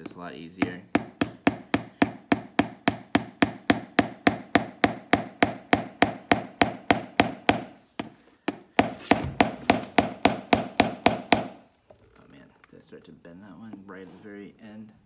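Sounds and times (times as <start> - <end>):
hammer tapping pin into heel: 0.0 - 11.6.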